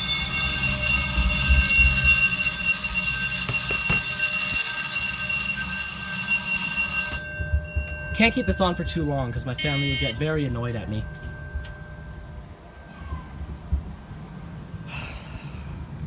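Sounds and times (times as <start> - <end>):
fire alarm ringing: 0.0 - 12.3.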